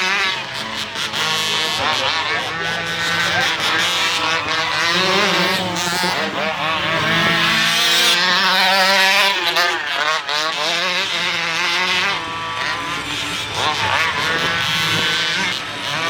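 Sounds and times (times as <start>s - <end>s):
rc truck engine revving: 0.0s - 16.0s.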